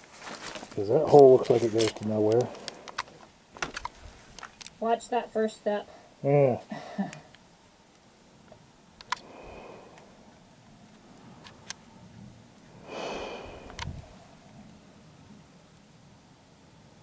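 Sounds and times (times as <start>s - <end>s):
footsteps on debris: 0.0s - 4.7s
person sniffing: 12.8s - 14.1s.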